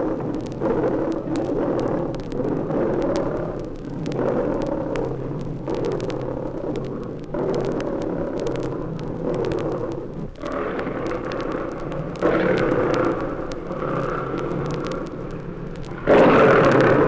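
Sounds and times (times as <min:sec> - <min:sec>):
big cats growling and snarling: 0:07.3 - 0:17.0.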